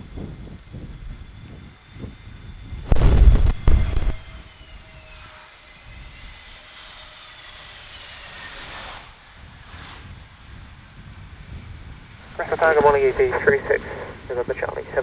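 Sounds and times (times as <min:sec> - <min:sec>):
jet engines whining: 0:02.9 - 0:04.3, 0:12.2 - 0:15.0
wind gusts buffeting microphone: 0:02.9 - 0:04.3.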